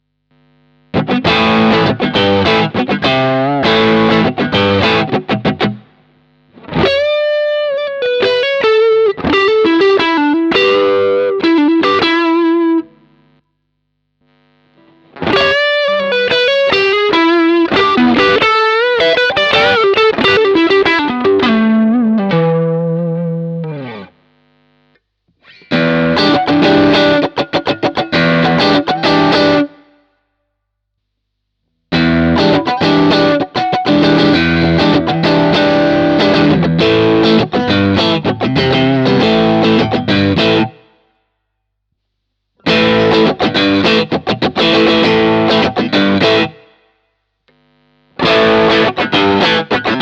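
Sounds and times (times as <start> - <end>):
overdriven electric guitar: 0.9 - 13.4, 14.3 - 24.3, 25.4 - 30.1, 31.9 - 41.1, 42.6 - 50.0.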